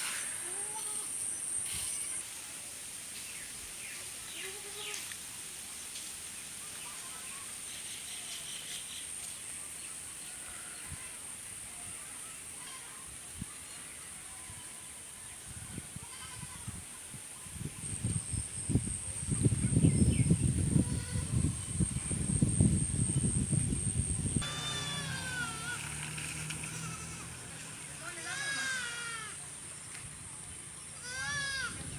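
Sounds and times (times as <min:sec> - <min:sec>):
high-pitched whine: 0:22.7 - 0:26.0.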